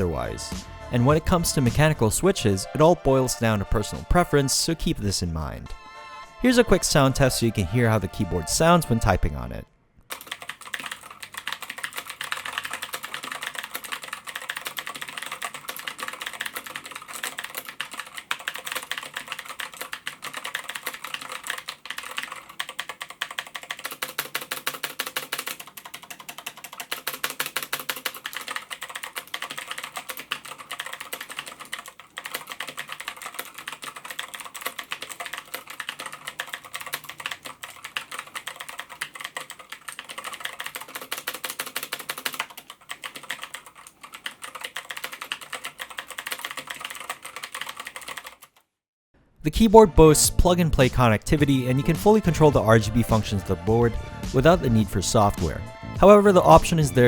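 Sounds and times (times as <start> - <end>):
mechanical keyboard typing: 10.1 - 48.6.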